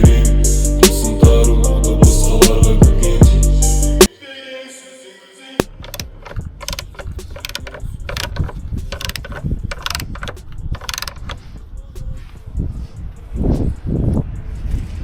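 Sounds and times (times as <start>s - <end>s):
ratchet wrench clicking: 5.6s - 13.2s
low handling rumble: 5.6s - 14.4s.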